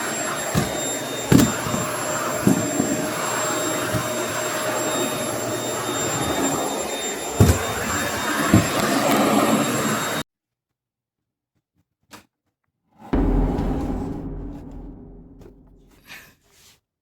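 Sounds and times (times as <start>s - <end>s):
vacuum cleaner whining: 0.0s - 10.2s
knocks: 13.2s - 16.0s.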